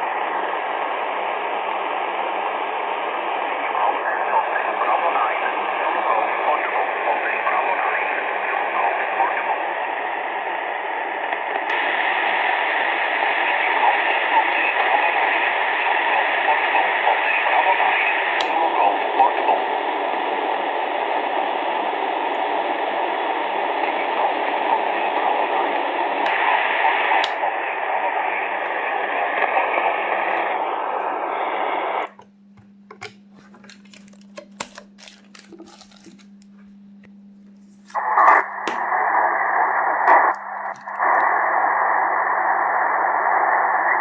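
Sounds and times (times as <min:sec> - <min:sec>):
radio static hiss: 0:00.0 - 0:44.0
clicks: 0:27.1 - 0:27.5, 0:32.0 - 0:39.3, 0:40.0 - 0:41.4
low hum: 0:27.4 - 0:43.3.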